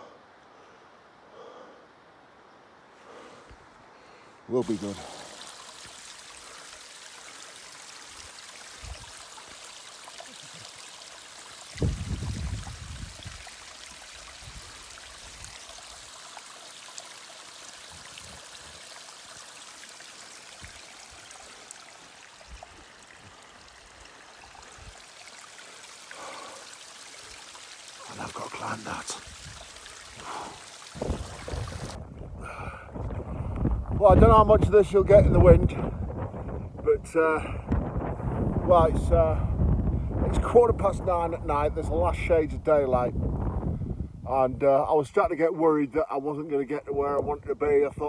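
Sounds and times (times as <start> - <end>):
running water hiss: 2.8 - 32.0.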